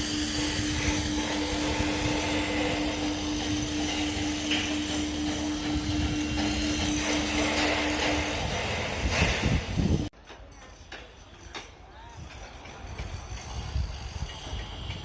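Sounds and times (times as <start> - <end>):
machine humming and rumbling: 0.0 - 10.1.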